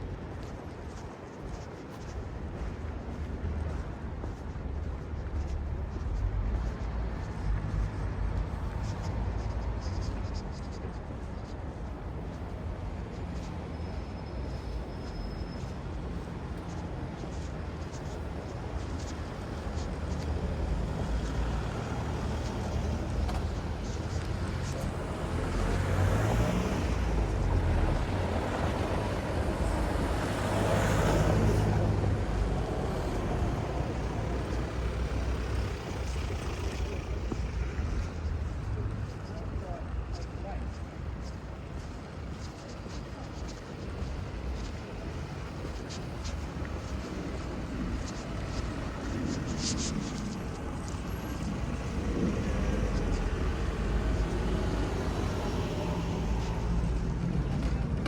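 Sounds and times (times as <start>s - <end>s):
low rumble of traffic: 0.0s - 58.0s.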